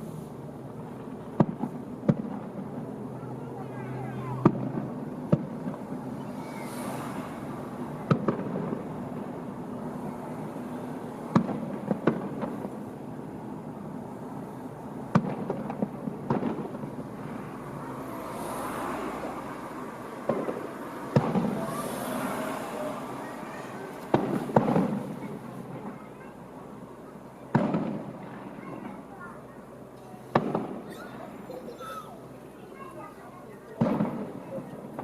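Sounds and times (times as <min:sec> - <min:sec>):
background rumble: 0:00.0 - 0:18.5
fireworks crackles: 0:00.0 - 0:35.0
fireworks bangs: 0:00.4 - 0:35.0.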